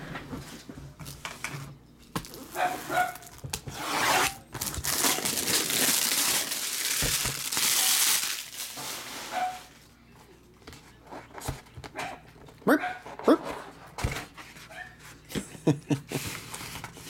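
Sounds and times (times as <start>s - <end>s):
packaging crinkling and tearing: 2.2s - 9.6s.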